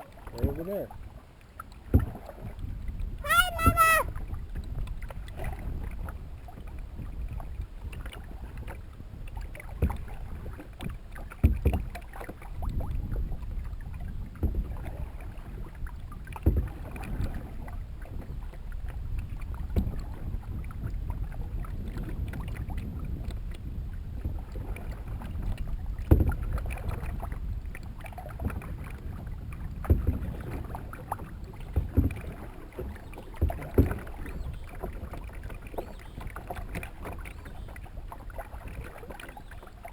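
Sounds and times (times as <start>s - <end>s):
water and wind rumble: 0.0s - 39.9s
paddle knocking canoe hull: 0.2s - 0.7s, 3.2s - 4.1s, 31.6s - 37.8s.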